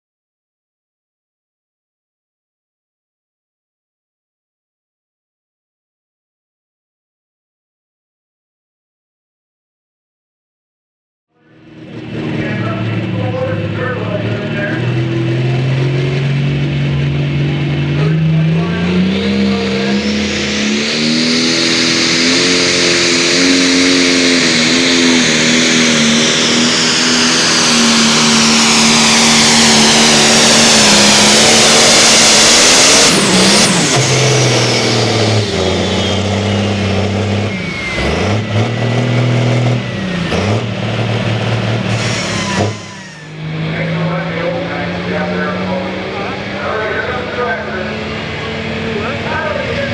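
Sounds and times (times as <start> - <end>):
engine at full throttle: 11.4 - 49.9
high whine climbing in pitch: 17.5 - 48.0.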